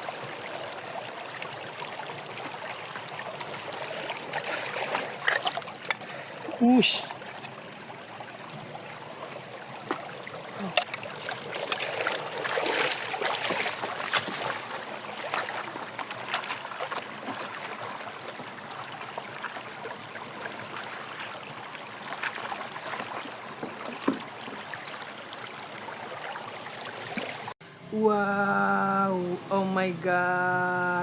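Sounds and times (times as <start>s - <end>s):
water rushing and splashing: 0.0s - 31.0s
small splashes or knocks: 3.6s - 7.6s, 9.7s - 18.0s, 22.0s - 25.0s.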